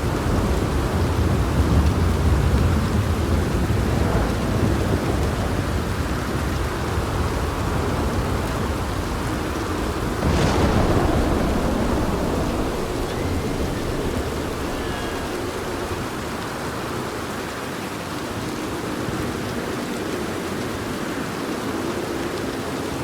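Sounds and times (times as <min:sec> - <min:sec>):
thunder clap: 0:00.0 - 0:18.1
thunder rumbling: 0:00.0 - 0:18.6
steady rain: 0:00.0 - 0:23.0.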